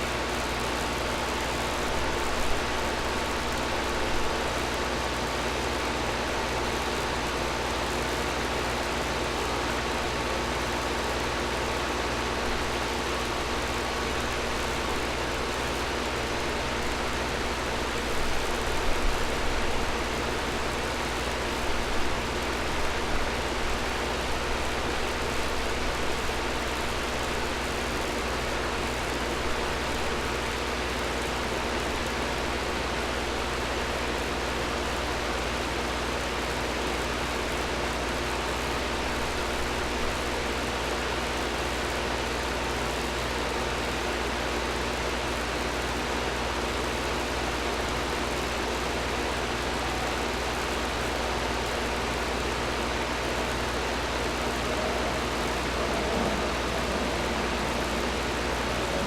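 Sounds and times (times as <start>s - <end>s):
air conditioner air rush: 45.0s - 59.0s
low hum: 47.7s - 59.0s.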